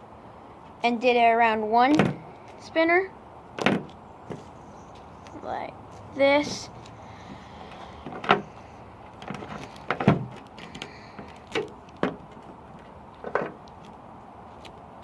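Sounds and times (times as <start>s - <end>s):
phone handling knocks and scrapes: 7.3s - 8.6s.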